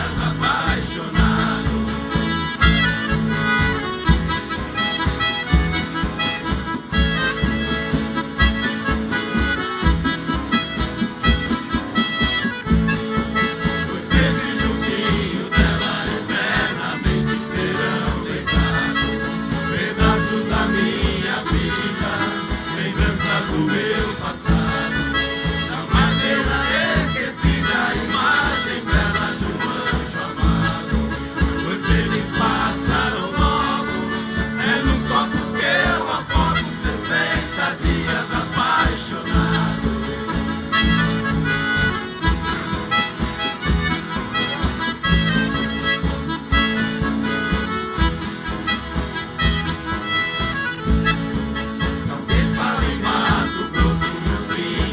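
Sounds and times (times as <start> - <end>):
live instrumental orchestra music: 1.9 - 14.2, 39.8 - 52.1.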